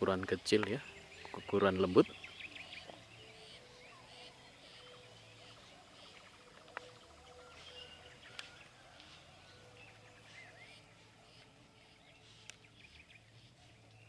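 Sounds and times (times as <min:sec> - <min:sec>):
faint birdsong: 0:00.0 - 0:14.0.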